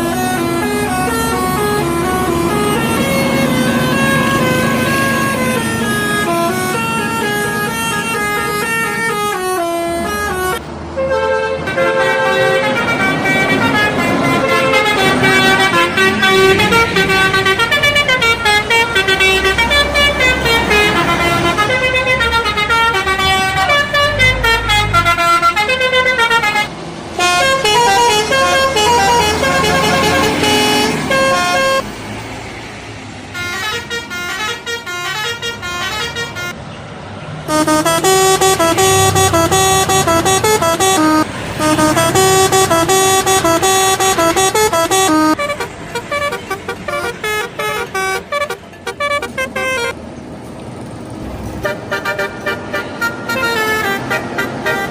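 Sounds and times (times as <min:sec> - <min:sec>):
multi-tone bus horns playing tunes: 0:00.0 - 0:32.0, 0:33.2 - 0:36.6, 0:37.4 - 0:50.0, 0:51.6 - 0:54.9.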